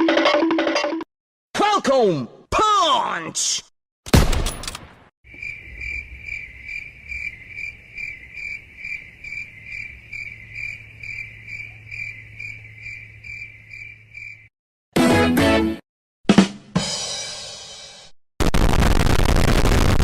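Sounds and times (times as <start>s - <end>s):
crickets chirping: 5.3s - 14.5s.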